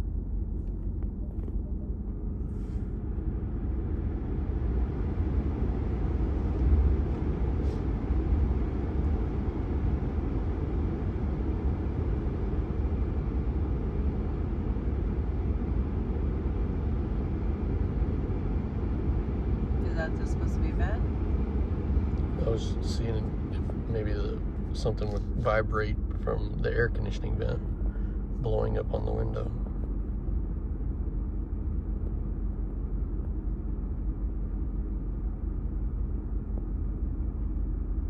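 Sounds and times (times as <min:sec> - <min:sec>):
engine and road rumble: 0:00.0 - 0:38.0
air rushing from vents: 0:02.3 - 0:20.1.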